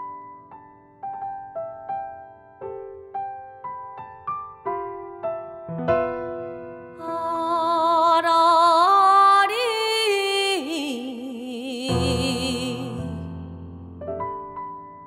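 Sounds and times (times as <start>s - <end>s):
piano: 0.0s - 15.0s
person singing with wide vibrato: 7.0s - 13.8s.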